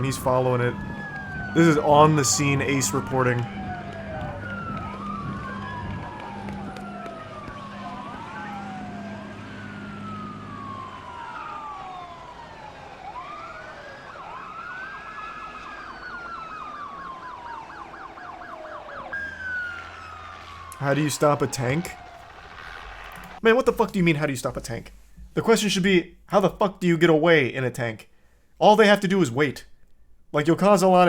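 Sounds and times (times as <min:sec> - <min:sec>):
police sirens wailing: 0:00.0 - 0:23.4
siren fast yelp: 0:00.0 - 0:23.4.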